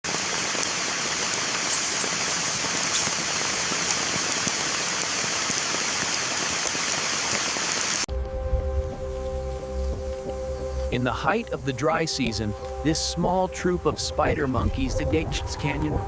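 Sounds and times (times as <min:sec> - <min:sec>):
steady rain: 0:00.0 - 0:08.1
raindrop ticks: 0:00.6 - 0:07.4
music with low bass: 0:08.1 - 0:16.0.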